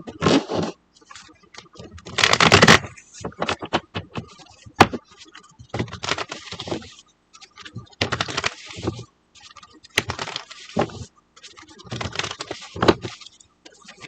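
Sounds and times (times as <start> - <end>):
cards shuffling: 2.0 - 5.0, 5.8 - 6.9, 8.0 - 9.0, 10.0 - 11.0, 11.9 - 13.2.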